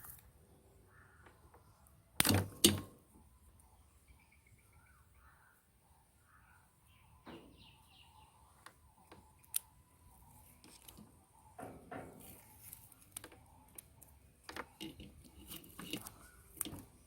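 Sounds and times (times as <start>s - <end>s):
birds chirping: 0.0s - 17.0s
clicks from handling wiring: 2.2s - 2.9s.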